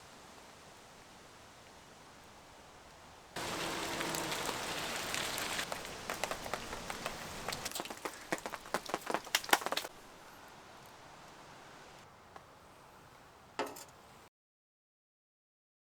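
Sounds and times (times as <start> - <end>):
raindrops striking a surface: 0.0 - 14.2
rain hissing: 0.0 - 14.3.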